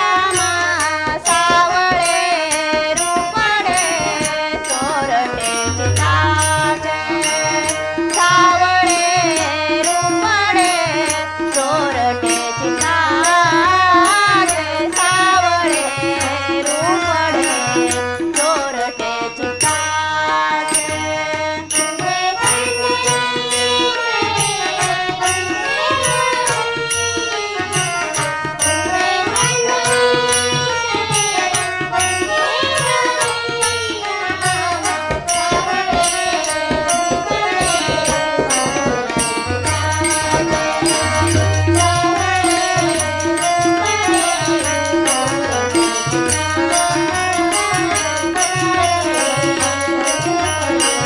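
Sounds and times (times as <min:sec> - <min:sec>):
wavering melody: 0:36.4 - 0:47.2.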